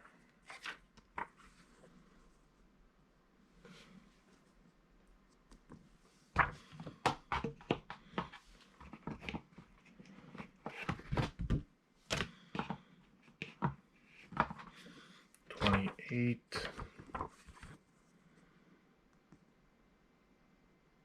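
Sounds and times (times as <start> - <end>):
paper rustling: 15.5 - 16.0.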